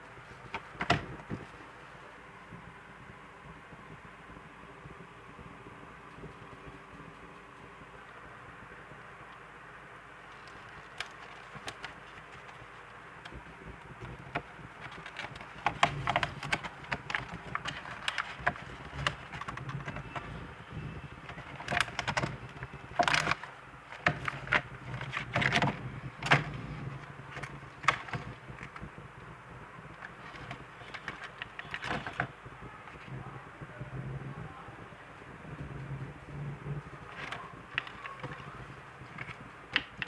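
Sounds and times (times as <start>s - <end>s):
packaging crinkling and clicking: 10.2s - 33.1s, 36.8s - 40.0s.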